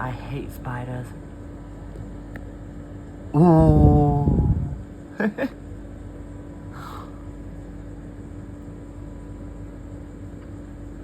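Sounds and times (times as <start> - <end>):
cooling unit hum: 0.0 - 11.0
brief vocal sounds: 3.4 - 4.8.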